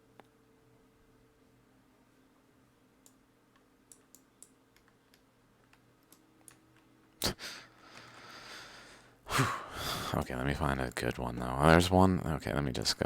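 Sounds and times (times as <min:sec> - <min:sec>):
computer mouse clicks: 0:03.0 - 0:07.3.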